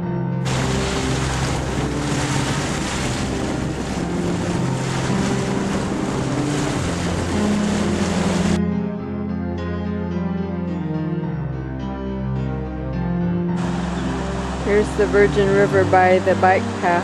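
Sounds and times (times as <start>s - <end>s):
background music: 0.0s - 17.0s
river rushing: 0.5s - 8.6s, 13.6s - 17.0s.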